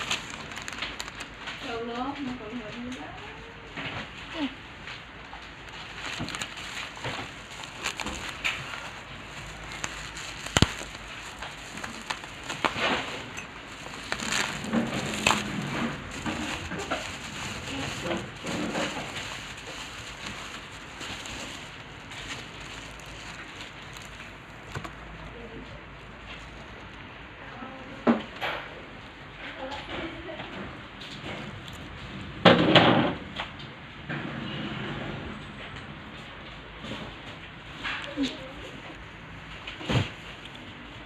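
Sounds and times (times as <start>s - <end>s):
plastic packaging crinkling: 0.0s - 27.1s.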